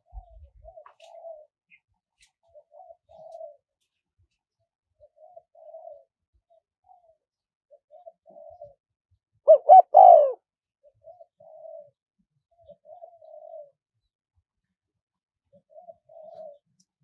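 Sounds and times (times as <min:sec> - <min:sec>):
dove cooing: 0:00.0 - 0:01.5, 0:02.5 - 0:03.6, 0:05.0 - 0:06.1, 0:07.8 - 0:08.8, 0:09.5 - 0:10.4, 0:11.0 - 0:11.9, 0:12.7 - 0:13.8, 0:15.5 - 0:16.6.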